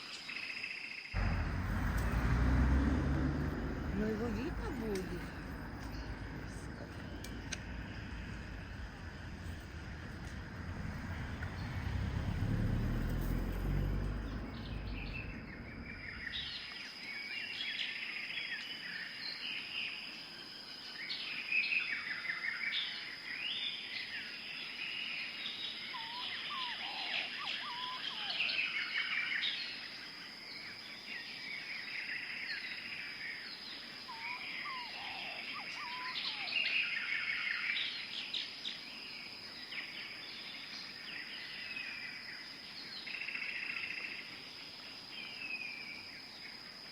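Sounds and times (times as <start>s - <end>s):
high insect-like hum: 0.0s - 46.9s
small birds chirping and singing: 0.0s - 46.9s
low rumble: 1.2s - 16.6s.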